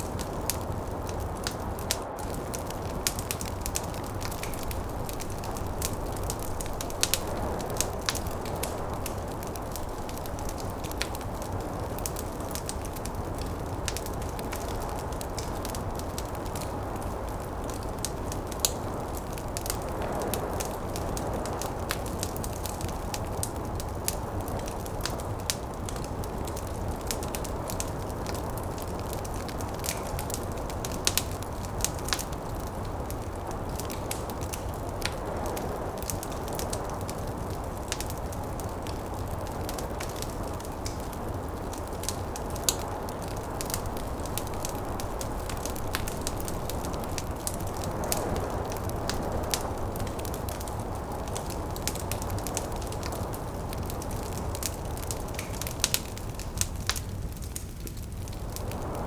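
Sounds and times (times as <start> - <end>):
snowstorm wind rushing: 0.0 - 51.9
sharp pops from fire: 0.0 - 59.0
wood fire crackling: 0.0 - 59.0.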